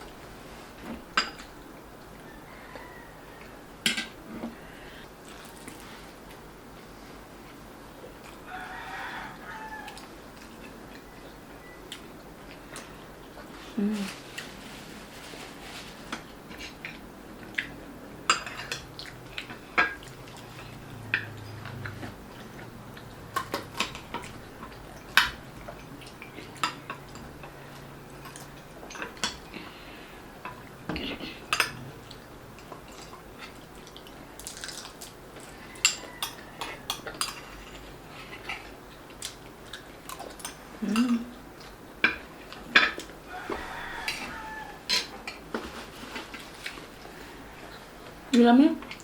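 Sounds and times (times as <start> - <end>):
cutlery clinking on plates: 35.8 - 37.8, 44.9 - 45.7.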